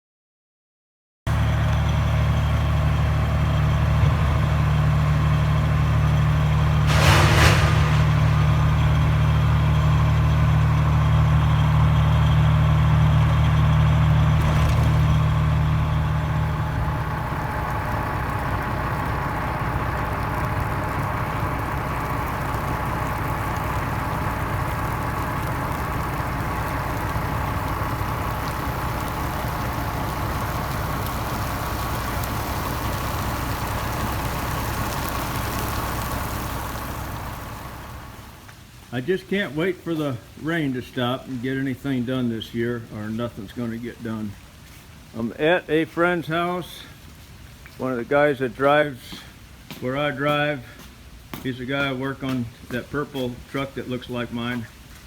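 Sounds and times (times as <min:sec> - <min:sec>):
vehicle engine idling: 0:01.3 - 0:38.4
brief rushing noise: 0:06.8 - 0:09.8.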